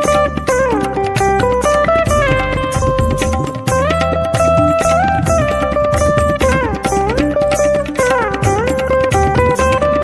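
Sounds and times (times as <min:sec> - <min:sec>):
plucked-string melody: 0:00.0 - 0:10.0
steady drum beat: 0:00.1 - 0:07.1.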